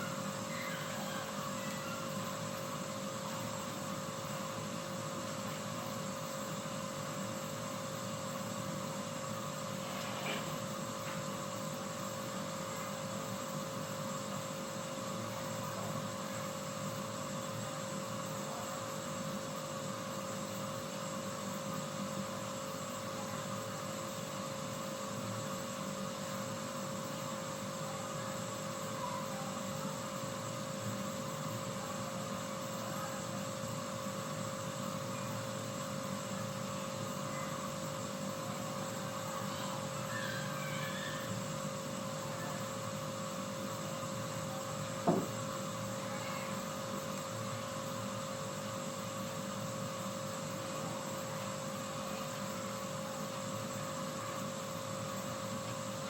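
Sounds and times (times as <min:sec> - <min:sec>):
faint steady hum: 0:00.0 - 0:56.0.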